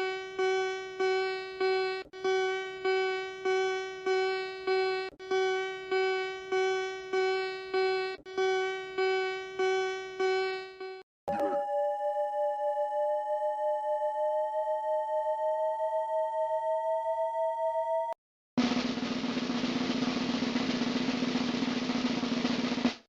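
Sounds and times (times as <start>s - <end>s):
electronic alarm beeps: 0.0s - 15.5s.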